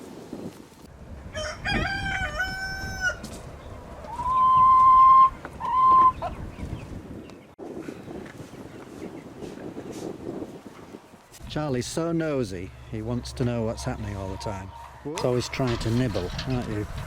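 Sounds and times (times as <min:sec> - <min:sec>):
rooster crowing: 0:01.3 - 0:03.3.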